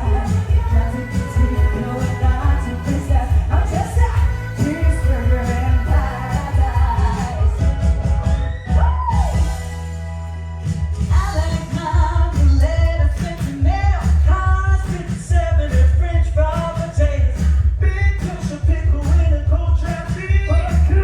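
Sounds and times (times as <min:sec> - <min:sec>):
person singing: 0:00.0 - 0:08.1, 0:11.1 - 0:17.2
live pop-rock music: 0:00.0 - 0:21.0.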